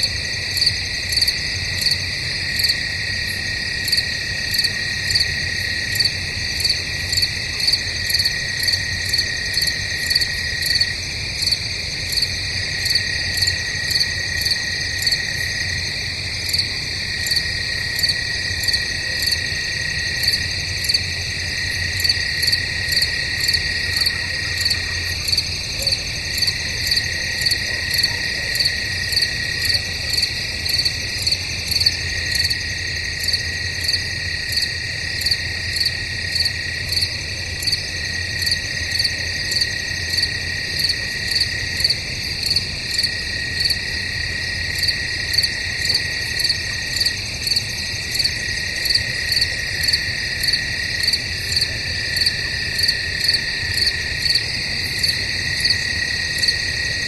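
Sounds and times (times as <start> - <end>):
crickets trilling: 0.0 - 57.0
pulsed cricket chirps: 0.0 - 57.0.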